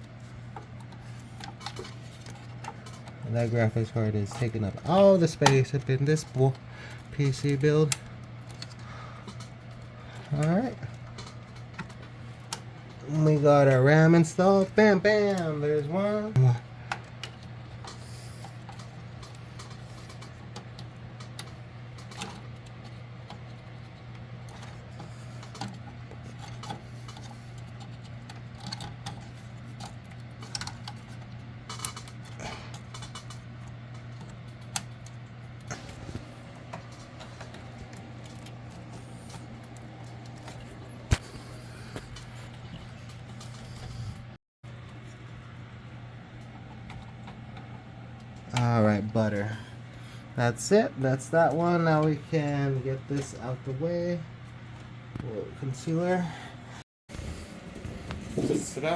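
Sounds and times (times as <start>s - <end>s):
steady low hum: 0.0s - 58.9s
computer parts clicking and clattering: 0.1s - 41.2s.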